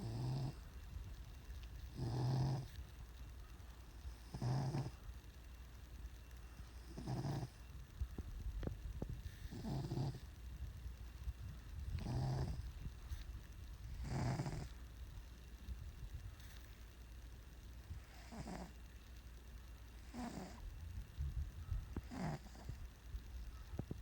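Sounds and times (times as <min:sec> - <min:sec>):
cat snoring: 0:00.0 - 0:00.6, 0:01.8 - 0:02.8, 0:04.1 - 0:05.0, 0:06.6 - 0:07.6, 0:09.3 - 0:10.3, 0:11.8 - 0:13.2, 0:13.8 - 0:14.8, 0:18.0 - 0:18.8, 0:20.0 - 0:20.6, 0:22.0 - 0:22.8.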